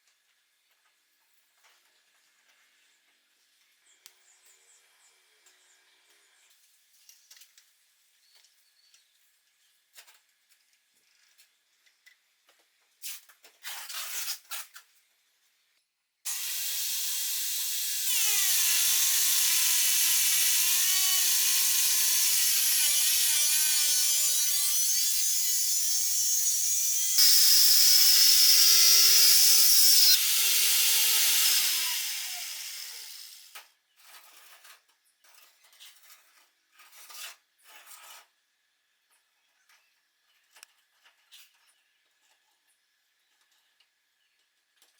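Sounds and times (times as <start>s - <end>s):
angle grinder whining into wood: 16.3s - 33.6s.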